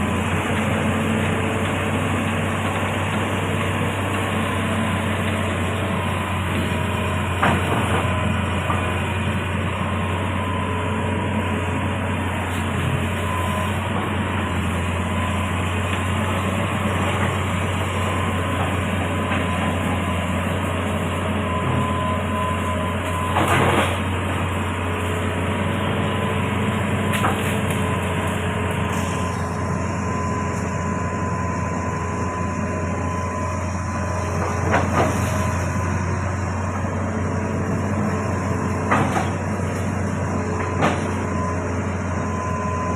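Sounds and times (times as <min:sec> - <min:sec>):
excavator engine humming: 0:00.0 - 0:42.9.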